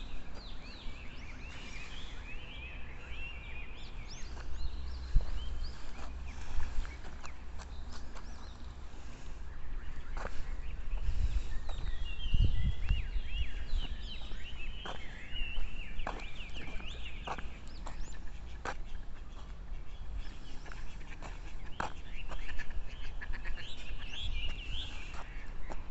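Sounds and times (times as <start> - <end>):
birds twittering: 0.0 - 25.9
wind rumble on microphone: 3.8 - 18.4.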